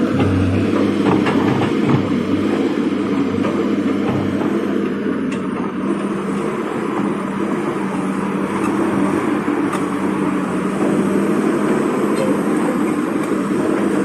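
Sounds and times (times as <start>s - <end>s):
excavator diesel engine running: 0.0s - 14.0s
clanks and knocks: 0.1s - 2.2s.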